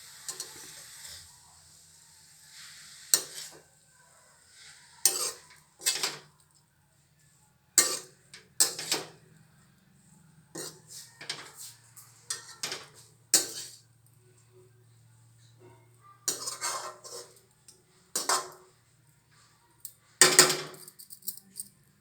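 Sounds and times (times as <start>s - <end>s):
metal utensil scraping pan: 2.5s - 3.6s, 4.6s - 6.3s, 7.8s - 9.2s, 10.6s - 13.8s, 16.3s - 17.5s, 18.1s - 18.7s.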